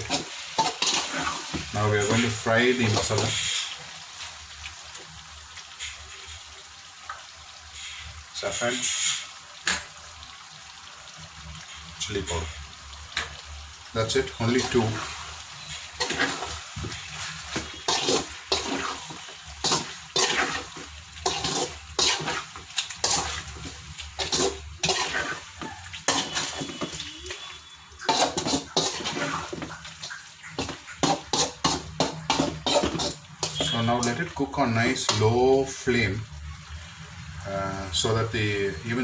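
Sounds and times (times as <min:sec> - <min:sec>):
metal spatula scraping a pan: 0:00.0 - 0:03.8, 0:14.4 - 0:34.2
food sizzling in a pan: 0:00.0 - 0:39.0.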